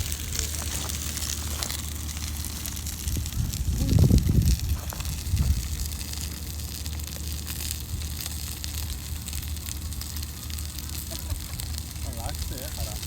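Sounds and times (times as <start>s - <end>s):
wind rumbling on microphone: 0.0s - 6.6s.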